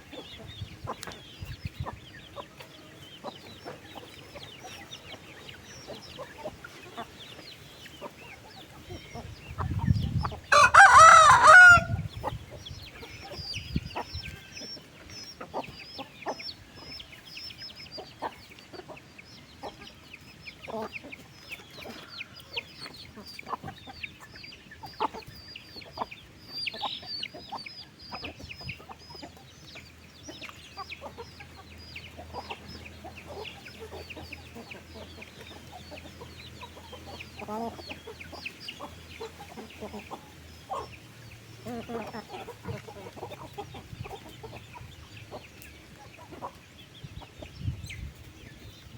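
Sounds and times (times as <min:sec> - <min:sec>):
chickens clucking: 0:00.0 - 0:48.9
rooster crowing: 0:10.5 - 0:12.0.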